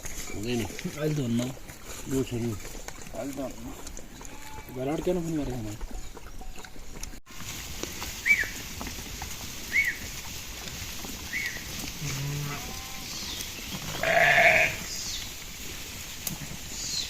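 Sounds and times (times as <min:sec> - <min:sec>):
sheep bleating: 0:12.0 - 0:13.2, 0:13.8 - 0:14.9.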